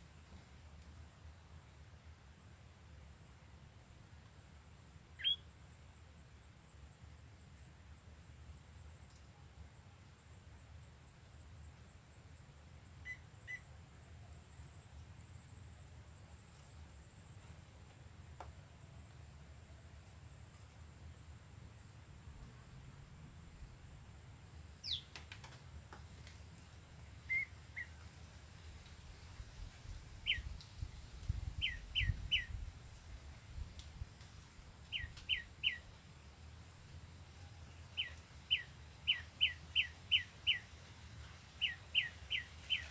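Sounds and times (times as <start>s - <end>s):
bird chirping: 5.2s - 5.4s, 24.8s - 25.2s, 27.3s - 28.0s, 30.2s - 32.6s, 34.9s - 35.9s, 37.9s - 40.7s, 41.6s - 42.9s.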